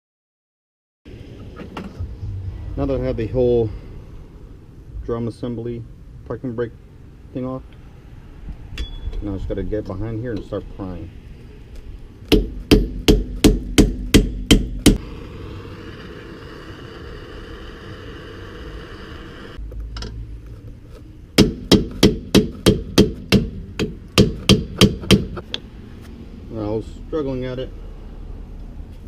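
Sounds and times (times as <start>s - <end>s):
hammer striking metal: 12.3s - 15.0s.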